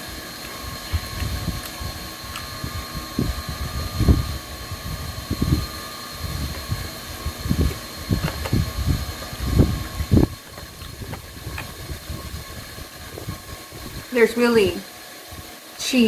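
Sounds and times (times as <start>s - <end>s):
chewing and mouth noise: 0.4s - 2.6s.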